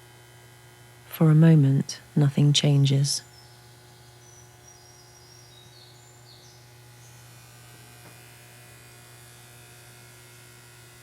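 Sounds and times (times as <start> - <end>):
toaster humming: 0.0 - 11.0
bird chirps: 3.2 - 7.3.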